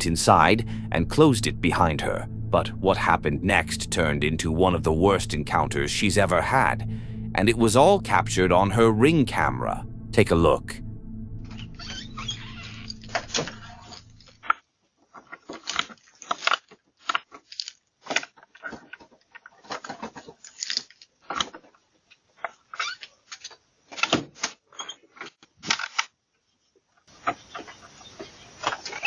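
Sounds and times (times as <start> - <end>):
background music: 0.0 - 14.3.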